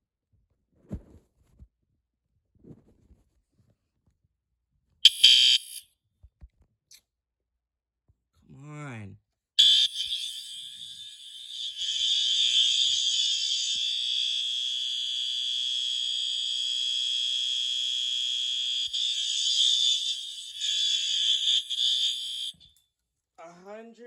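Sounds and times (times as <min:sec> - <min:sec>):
fire alarm horn: 0:05.0 - 0:05.8, 0:09.6 - 0:22.7.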